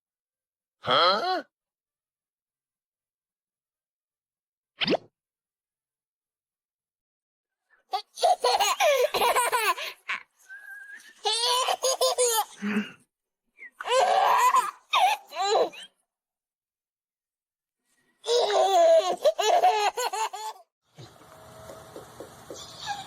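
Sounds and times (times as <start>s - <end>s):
high-pitched laughter: 11.1s - 12.8s, 13.8s - 15.9s, 22.5s - 23.0s.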